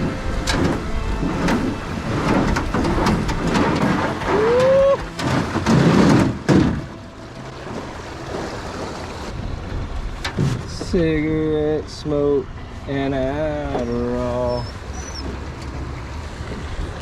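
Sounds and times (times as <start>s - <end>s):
knocks and scrapes on boat hull: 0.0s - 7.8s, 10.2s - 11.0s
short whine: 0.0s - 9.3s
water rushing and splashing: 0.0s - 17.0s.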